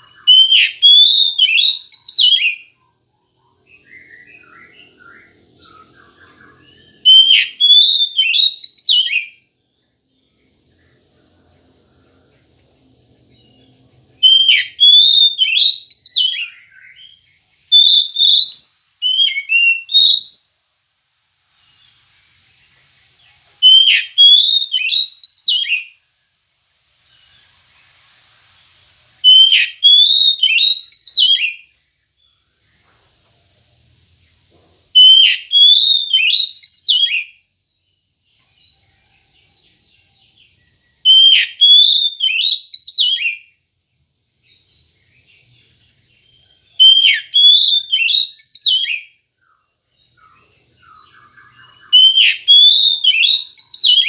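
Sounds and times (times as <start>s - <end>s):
bird singing whistled phrases: 0.0s - 9.5s, 14.1s - 20.6s, 22.8s - 26.0s, 29.2s - 32.4s, 35.0s - 37.4s, 38.4s - 43.6s, 44.5s - 54.0s
faint soft bird twittering: 0.0s - 54.0s.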